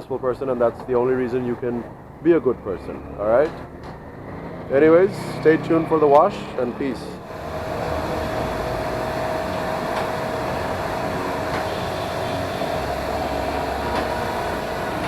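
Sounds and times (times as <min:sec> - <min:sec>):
machine whine over hiss: 0:07.2 - 0:15.0.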